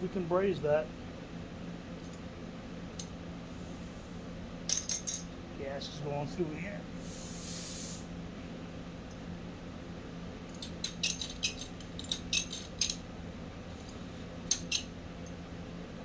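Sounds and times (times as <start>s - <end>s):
gas hissing from torch: 6.9s - 8.1s.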